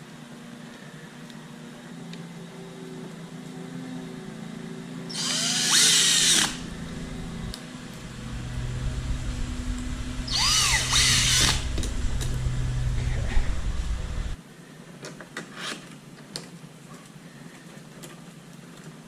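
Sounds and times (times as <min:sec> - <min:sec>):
power drill spinning: 0:05.1 - 0:14.4.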